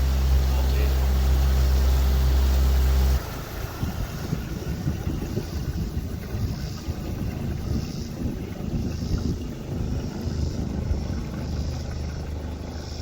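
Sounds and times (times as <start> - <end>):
engine hum: 0.0 - 13.0
uneven low rumble: 3.8 - 13.0.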